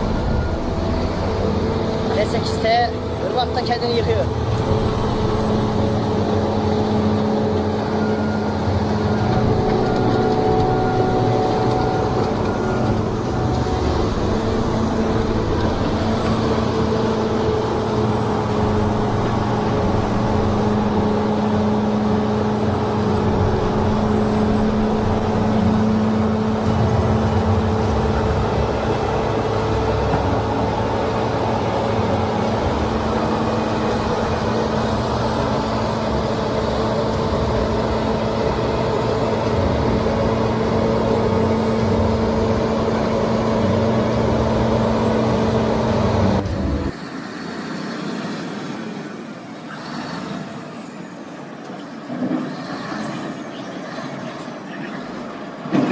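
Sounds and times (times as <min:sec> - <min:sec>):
heavy machine engine running: 0:00.0 - 0:49.3.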